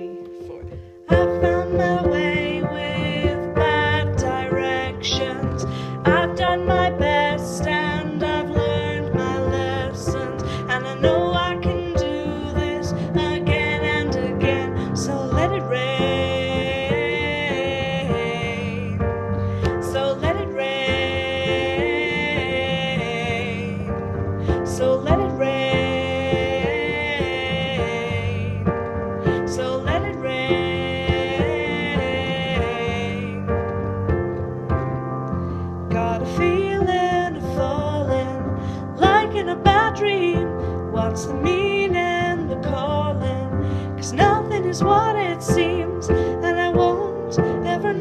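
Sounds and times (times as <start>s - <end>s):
person singing: 0.0s - 33.7s
piano accompaniment: 0.0s - 48.0s
sustained keyboard chords: 0.0s - 48.0s.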